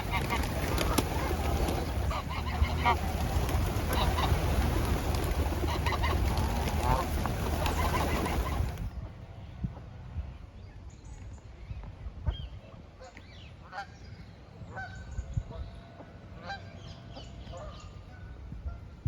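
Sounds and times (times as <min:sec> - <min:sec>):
geese honking: 0:00.0 - 0:08.9.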